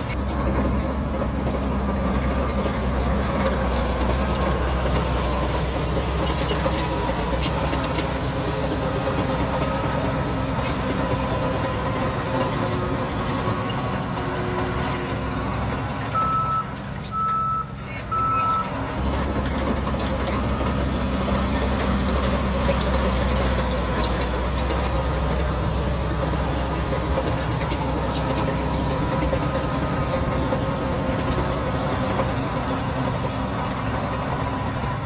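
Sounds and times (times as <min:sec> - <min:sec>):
bulldozer diesel engine running: 0:00.0 - 0:35.0
reverse alarm beeps: 0:16.1 - 0:18.8.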